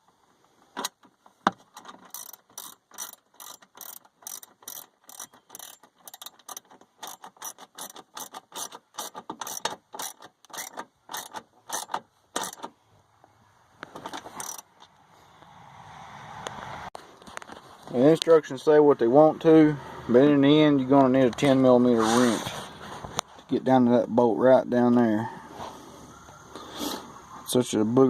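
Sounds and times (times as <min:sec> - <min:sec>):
ratchet clicking: 0:00.8 - 0:12.7, 0:14.0 - 0:14.7
rustle or scrape: 0:16.2 - 0:18.6, 0:21.4 - 0:23.7.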